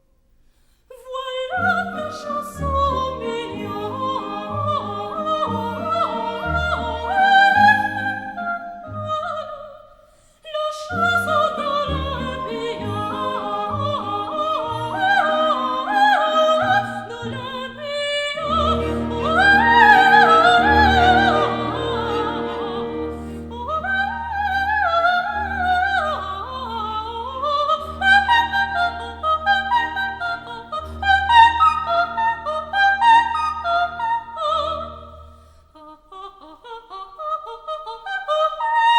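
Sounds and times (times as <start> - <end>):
operatic singing voice: 0.9 - 9.8, 10.5 - 35.1
orchestral accompaniment: 1.8 - 8.3, 18.4 - 26.4.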